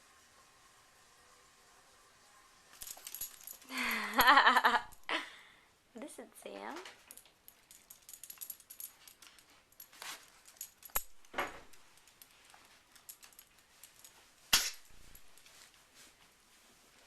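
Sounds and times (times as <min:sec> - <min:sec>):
faint light jingling: 0:02.8 - 0:05.3, 0:06.4 - 0:15.8.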